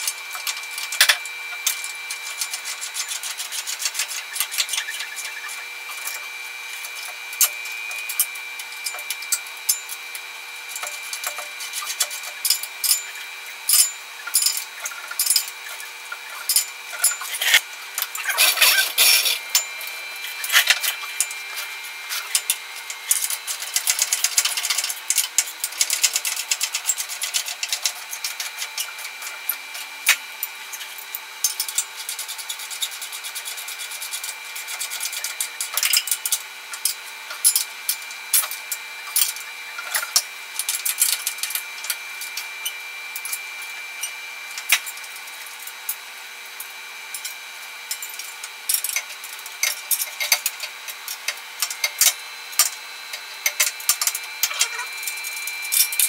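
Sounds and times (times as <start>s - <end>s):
scraping and rubbing: 17.2s - 17.6s, 18.2s - 19.6s.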